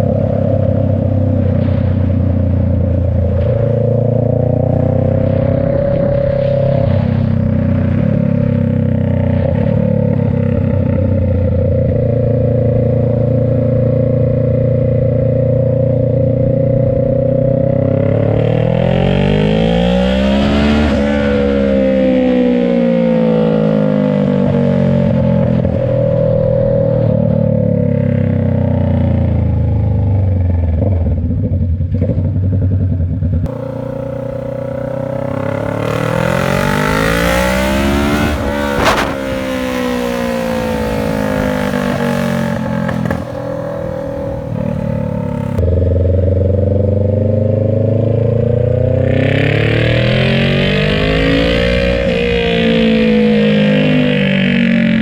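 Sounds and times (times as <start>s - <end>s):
exhaust crack: 0.0s - 17.2s, 30.3s - 46.7s
motorcycle engine revving: 0.0s - 55.0s.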